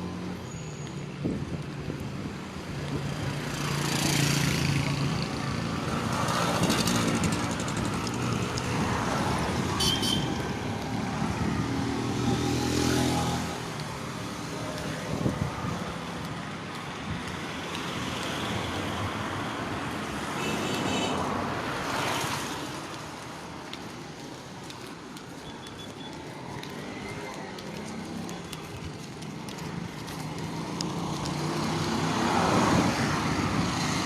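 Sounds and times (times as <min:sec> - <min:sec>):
vehicles rushing past: 0:00.0 - 0:34.0.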